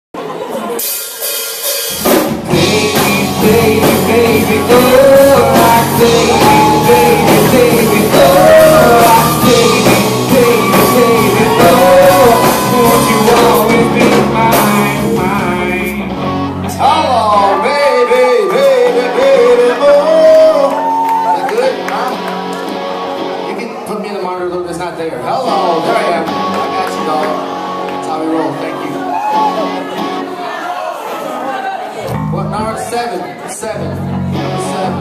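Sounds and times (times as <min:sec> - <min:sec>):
drum kit: 0:00.2 - 0:17.1
bass guitar: 0:01.9 - 0:23.8, 0:24.6 - 0:30.3, 0:32.0 - 0:33.0, 0:33.6 - 0:35.0
person singing: 0:02.5 - 0:21.9.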